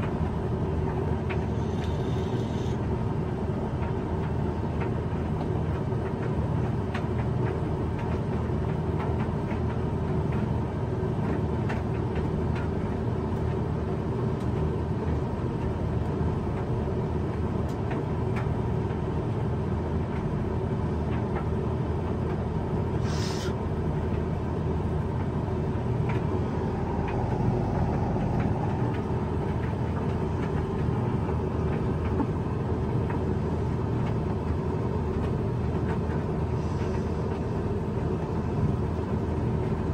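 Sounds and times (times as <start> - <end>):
tumble dryer drum rumbling: 0.0 - 23.0, 23.6 - 39.9
short hiss: 23.0 - 23.6.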